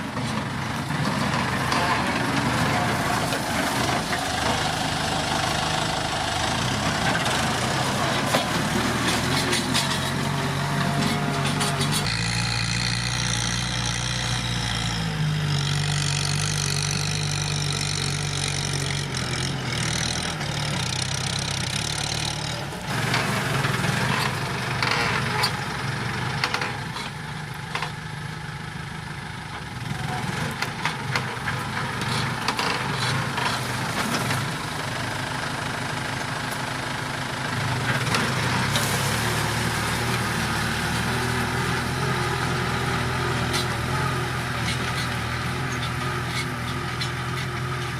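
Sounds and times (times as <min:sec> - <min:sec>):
tractor diesel engine running: 0:00.0 - 0:47.9.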